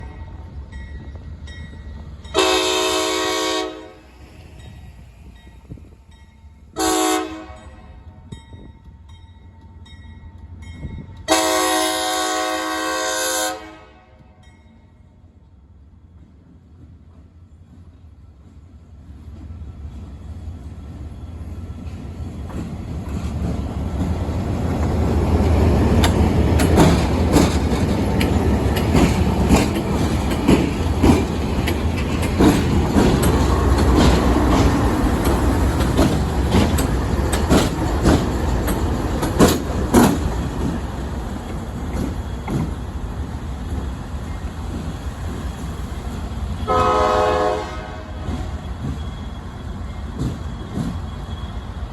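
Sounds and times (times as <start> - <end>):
train rumbling: 0.0 - 51.9
train horn blast: 2.3 - 4.1, 6.8 - 8.0, 11.3 - 14.4, 46.6 - 48.5
wheels clacking over rail joints: 21.8 - 47.0.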